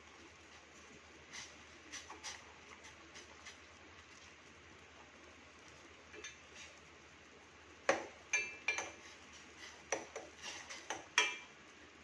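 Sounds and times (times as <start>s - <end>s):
metal spoon clinking on pot: 6.2s - 6.4s, 7.9s - 9.0s, 10.9s - 11.5s.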